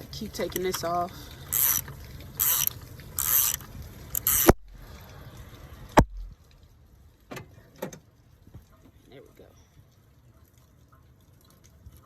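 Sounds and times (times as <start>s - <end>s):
socket ratchet scraping: 1.5s - 4.6s.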